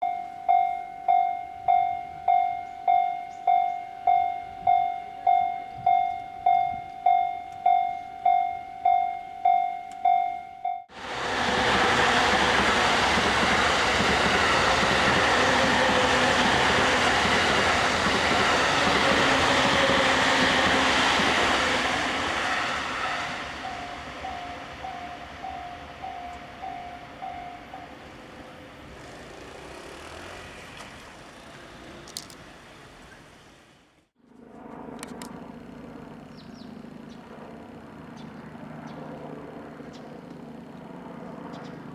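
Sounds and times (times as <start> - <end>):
level-crossing warning bell dinging: 0.0 - 11.0, 11.8 - 29.0
train passing: 0.0 - 34.1.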